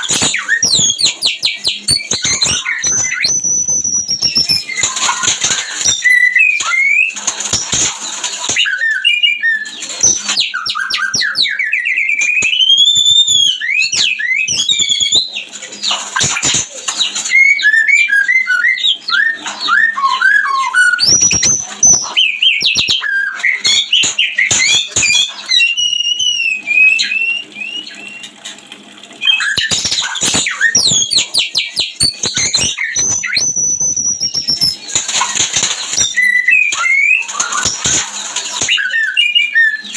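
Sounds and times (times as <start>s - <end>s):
songbird whistles and trills: 0.0s - 28.4s, 29.1s - 39.9s.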